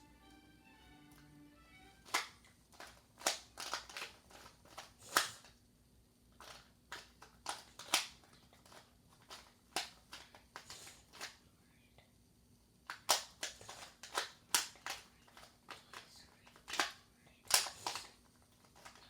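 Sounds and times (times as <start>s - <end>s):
plastic cube clacking: 2.0s - 5.6s, 6.3s - 11.4s, 12.9s - 19.0s.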